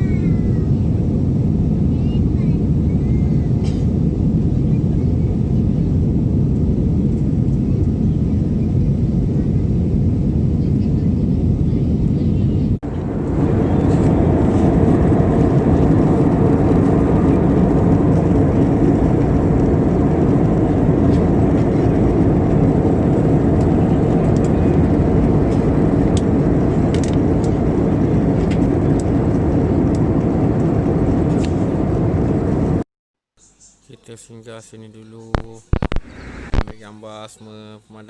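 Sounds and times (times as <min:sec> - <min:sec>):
car road and engine noise: 0:12.6 - 0:32.8.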